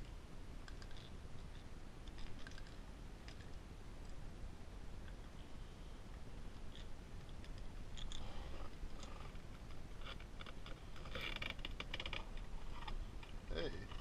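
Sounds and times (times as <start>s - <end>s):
small hard objects clicking and rattling: 0.6s - 4.2s.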